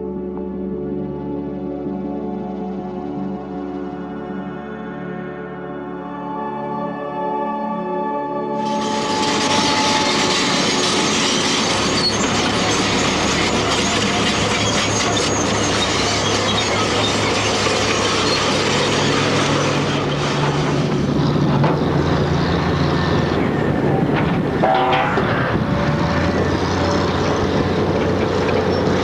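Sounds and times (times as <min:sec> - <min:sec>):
heavy machinery drone: 0:08.6 - 0:29.0
wind buffeting microphone: 0:08.8 - 0:29.0.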